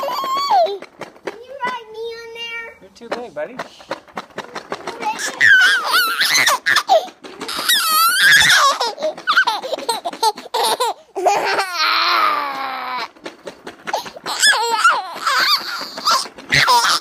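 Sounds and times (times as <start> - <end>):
child laughing and squealing: 0.0 - 0.9, 4.4 - 13.2, 13.9 - 17.0.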